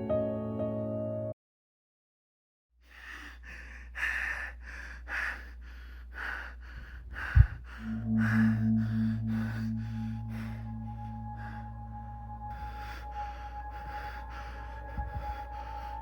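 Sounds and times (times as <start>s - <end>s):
person breathing fast and hard: 2.8s - 16.0s
steady low hum: 4.0s - 16.0s
low humming tone: 6.8s - 16.0s.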